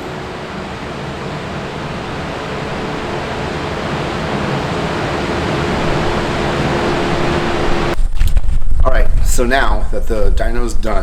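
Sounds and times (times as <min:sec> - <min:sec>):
engine and dyno rollers rushing: 0:00.0 - 0:08.0.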